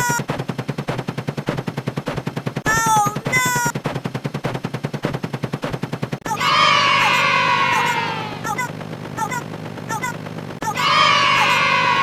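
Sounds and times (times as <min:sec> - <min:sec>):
rapid sound-effect clicks: 0:00.0 - 0:06.2
voiced oh-no sound effect: 0:06.2 - 0:11.8.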